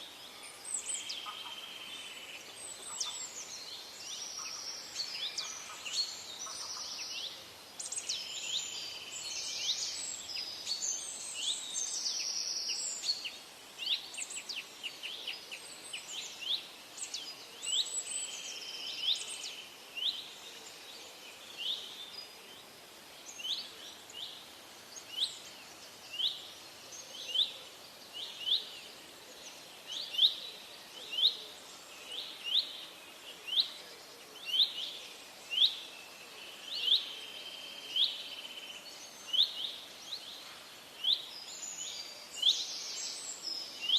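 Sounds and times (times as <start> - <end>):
birds chirping and trilling: 0.0 - 43.9.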